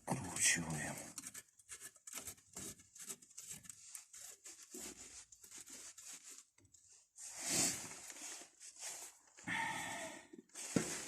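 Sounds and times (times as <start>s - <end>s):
rasping scrape: 1.1s - 6.5s.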